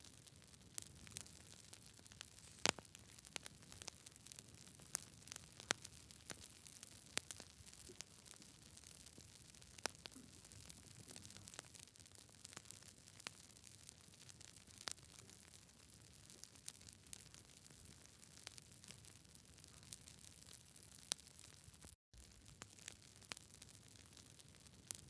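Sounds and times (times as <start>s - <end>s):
campfire crackling and popping: 0.0s - 25.0s
faint steady hiss: 2.0s - 3.6s.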